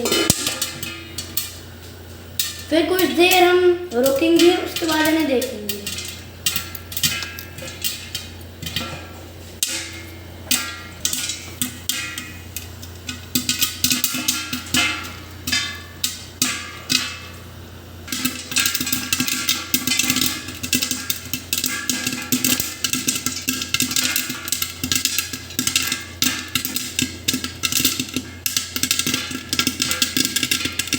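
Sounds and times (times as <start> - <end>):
popcorn popping in a metal pot: 0.0 - 30.9.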